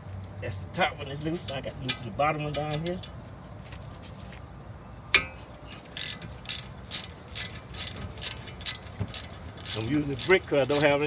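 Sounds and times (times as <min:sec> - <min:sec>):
socket ratchet clicking: 0:05.2 - 0:11.0.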